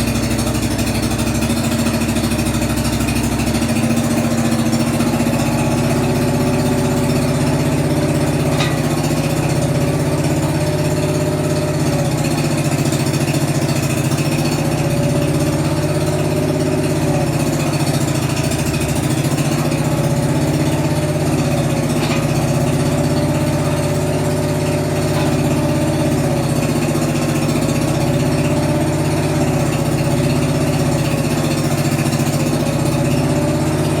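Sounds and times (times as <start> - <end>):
small digger engine running: 0.0 - 34.0.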